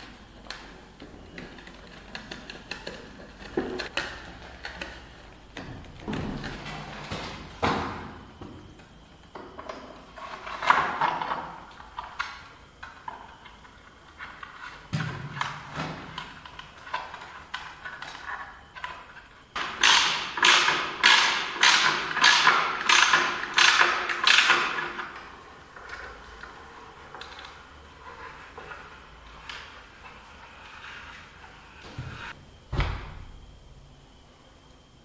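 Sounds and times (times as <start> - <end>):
workshop knocks and thuds: 5.6 - 8.7, 14.9 - 16.2, 31.9 - 33.5.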